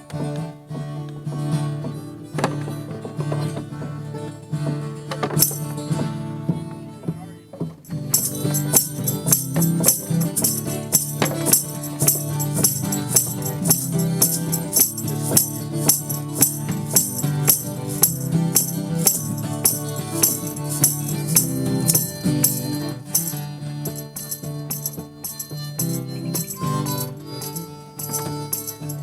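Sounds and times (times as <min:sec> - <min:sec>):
jingling percussion beat: 0:05.4 - 0:06.7, 0:07.7 - 0:29.0
jig played on harmonica: 0:08.0 - 0:29.0.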